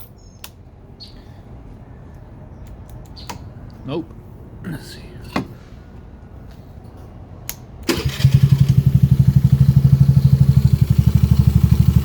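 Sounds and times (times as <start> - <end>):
scooter engine starting and idling: 7.8 - 12.0.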